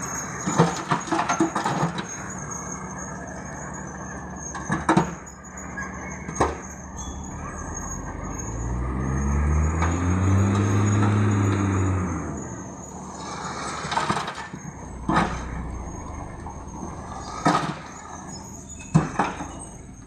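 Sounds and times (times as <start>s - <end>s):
heavy diesel engine revving: 0.0s - 20.0s.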